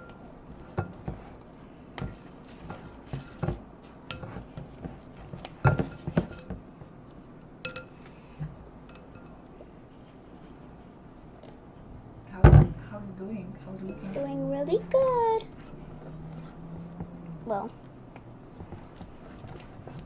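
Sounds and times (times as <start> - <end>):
fork stirring slime: 0.0 - 6.6, 13.9 - 20.0
fork clinking against bowl: 7.6 - 8.0, 8.9 - 9.4.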